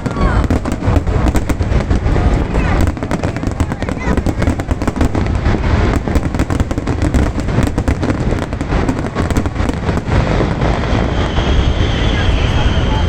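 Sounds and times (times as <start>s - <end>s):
fireworks crackling pops: 0.0s - 13.0s
low rumble of firework bursts: 0.0s - 13.0s.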